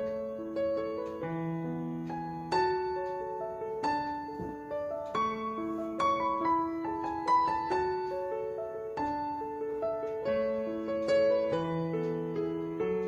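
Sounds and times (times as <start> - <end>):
gentle piano melody: 0.0 - 13.0.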